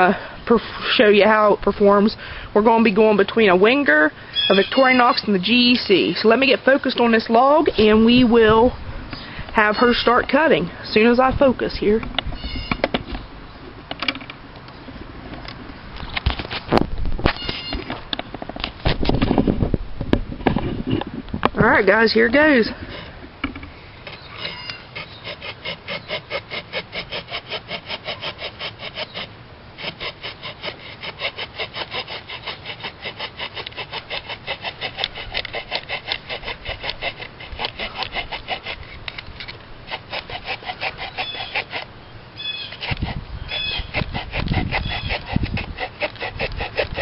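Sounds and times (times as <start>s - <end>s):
small saw cutting through log: 2.8s - 8.2s, 24.0s - 47.0s
low bumps: 5.5s - 23.8s.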